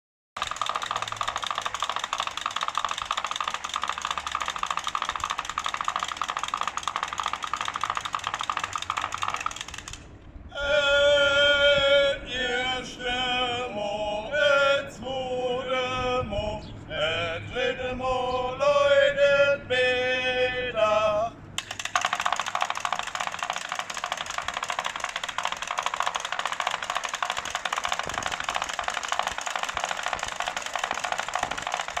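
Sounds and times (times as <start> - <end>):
wooden clappers rattling: 0.4 - 10.1, 21.6 - 32.0
person chanting sing-song call: 10.5 - 21.3.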